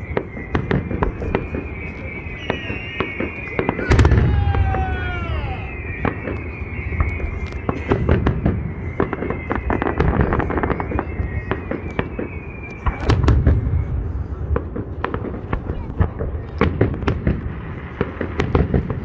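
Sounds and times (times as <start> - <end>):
high steady whistle: 0.0 - 14.4
falling firework whistles: 0.0 - 15.6
firework crackles and bangs: 0.0 - 19.0
firework boom: 3.6 - 6.4.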